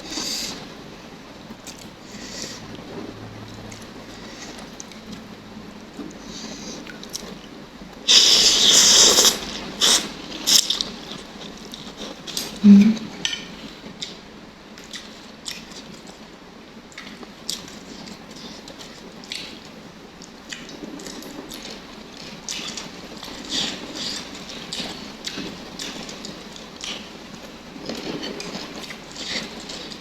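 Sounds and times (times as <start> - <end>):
chewing: 1.6 - 2.8, 8.1 - 14.2, 14.8 - 16.1, 16.9 - 19.6, 20.2 - 30.0.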